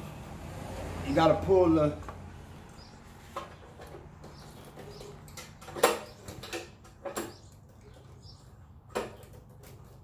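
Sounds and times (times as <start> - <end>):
metal parts clicking and tapping: 3.4 - 8.2.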